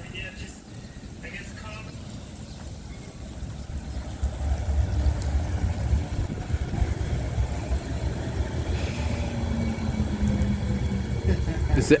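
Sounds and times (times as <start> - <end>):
vehicle idling rumble: 0.0 - 12.0.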